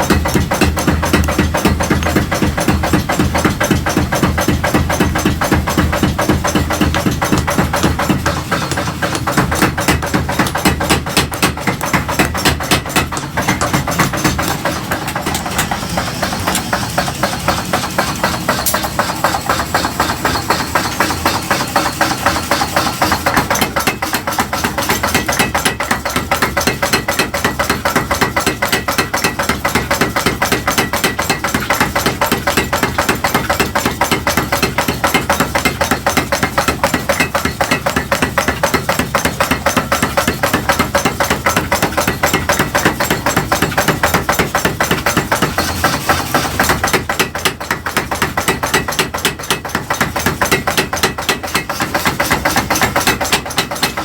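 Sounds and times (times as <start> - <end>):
rapid hammering on metal: 0.0 - 54.0.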